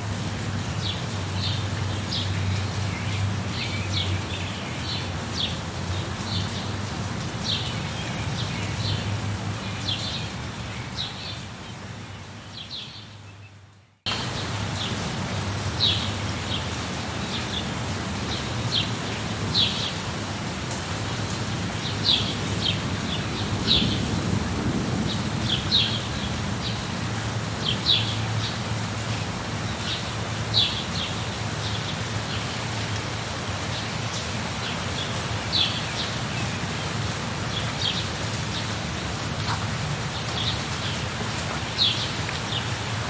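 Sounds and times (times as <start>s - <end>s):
steady rain: 0.0s - 43.0s
low rumble of thunder: 22.8s - 27.0s.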